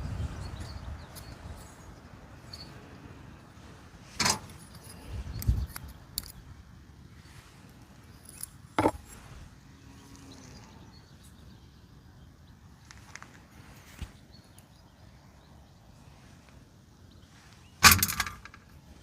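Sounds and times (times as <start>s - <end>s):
small parts clicking and knocking: 4.2s - 6.5s, 7.9s - 9.2s, 17.8s - 18.8s.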